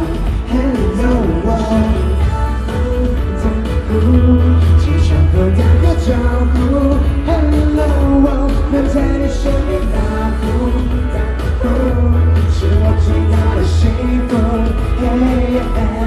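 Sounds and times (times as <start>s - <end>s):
heavy bass beat: 0.0s - 16.0s
pop song with male vocal: 0.0s - 16.0s.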